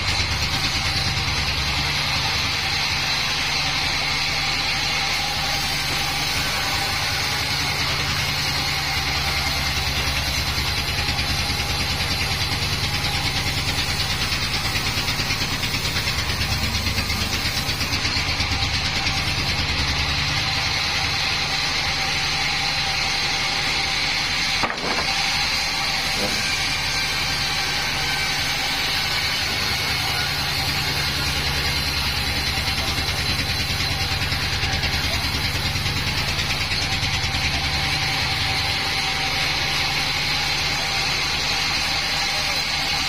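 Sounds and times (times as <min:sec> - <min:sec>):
high machine whine: 0:00.0 - 0:43.0
throbbing machinery drone: 0:00.0 - 0:43.0
sharp knock: 0:24.6 - 0:25.2.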